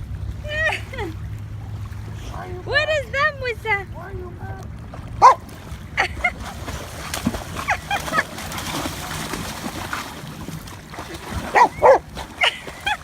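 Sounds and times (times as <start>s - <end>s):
surf washing: 0.0s - 13.0s
dog barking: 5.2s - 5.4s, 11.5s - 12.0s.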